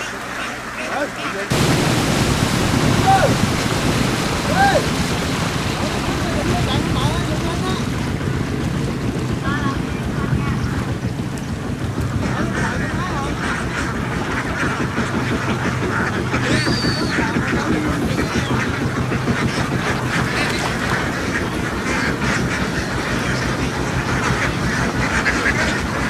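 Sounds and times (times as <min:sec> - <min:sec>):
ducks quacking: 0:00.0 - 0:26.0
engine running: 0:01.5 - 0:26.0.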